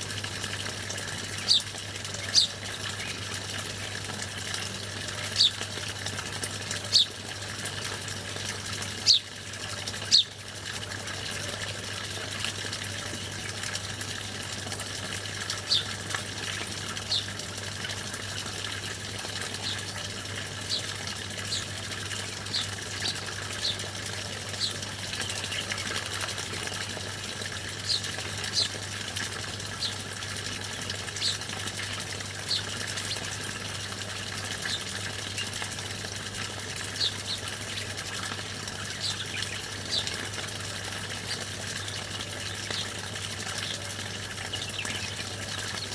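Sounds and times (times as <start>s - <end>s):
running water: 0.0s - 45.9s
songbirds chirping: 1.0s - 4.2s, 4.8s - 5.8s, 6.8s - 7.2s, 9.0s - 9.3s, 10.0s - 10.4s, 15.4s - 17.5s, 19.4s - 28.9s, 29.6s - 30.1s, 31.1s - 33.9s, 36.9s - 38.0s, 38.7s - 40.4s, 41.1s - 45.9s.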